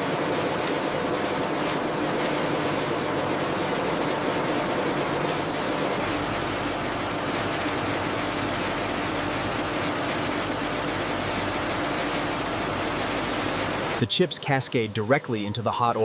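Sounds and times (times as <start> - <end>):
conveyor machine noise: 0.0 - 16.0
faint high whine: 6.0 - 11.4.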